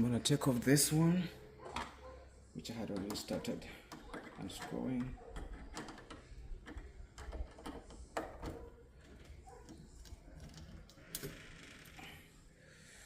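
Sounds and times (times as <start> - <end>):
metal lock hardware clicking: 2.8 - 11.4.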